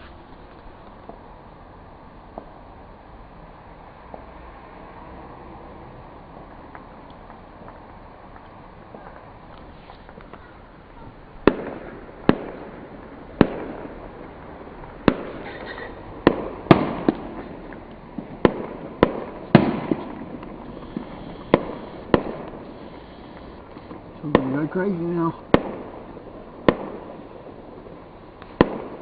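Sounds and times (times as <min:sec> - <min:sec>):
fireworks exploding: 0:06.0 - 0:29.0.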